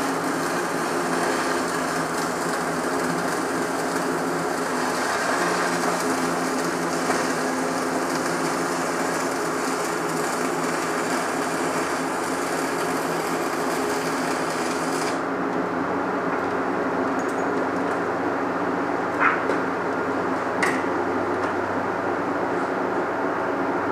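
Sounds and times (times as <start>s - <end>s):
welding arc crackling: 0.0s - 15.3s
welder low hum: 0.0s - 16.1s.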